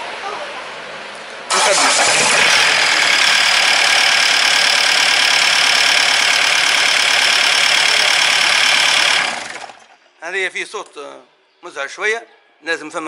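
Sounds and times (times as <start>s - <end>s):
diesel engine idling knocking: 2.5s - 9.9s.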